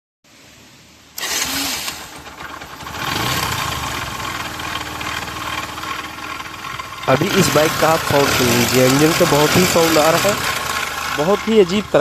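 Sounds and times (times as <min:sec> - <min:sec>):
motorcycle engine abnormal noise: 0:01.2 - 0:12.0.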